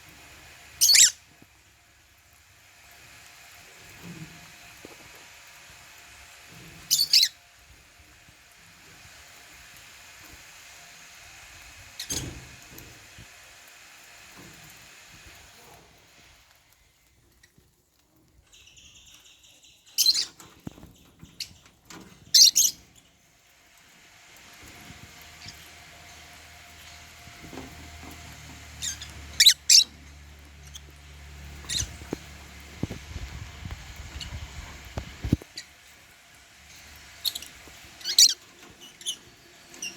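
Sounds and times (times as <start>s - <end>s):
birds chirping: 0.8s - 1.2s, 6.8s - 7.4s, 18.4s - 23.2s, 25.2s - 35.8s, 36.7s - 39.9s
lovebirds chirping shrilly: 0.8s - 1.2s, 6.9s - 7.4s, 22.3s - 22.8s, 28.8s - 29.9s, 37.2s - 39.2s.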